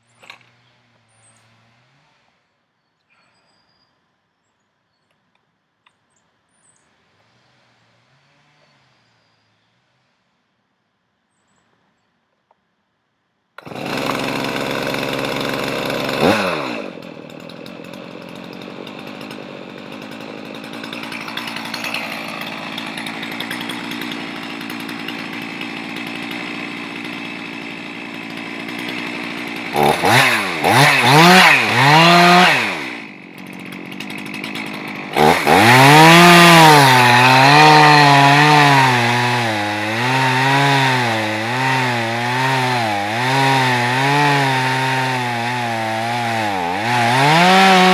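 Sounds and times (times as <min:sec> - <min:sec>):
chainsaw running and revving: 0:00.0 - 0:02.4, 0:07.2 - 0:09.2, 0:13.6 - 0:47.9
chainsaw cutting log: 0:00.0 - 0:02.5, 0:13.6 - 0:47.9.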